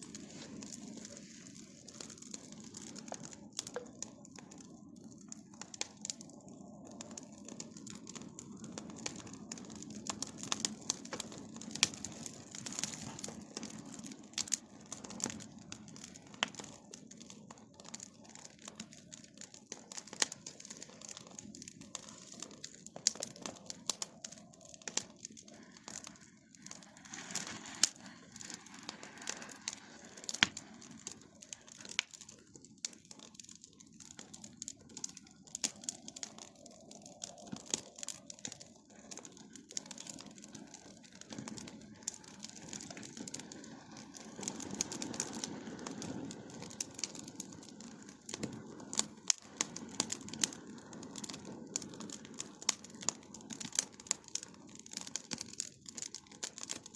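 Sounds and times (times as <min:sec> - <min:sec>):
bonfire crackling and popping: 0:00.0 - 0:56.9.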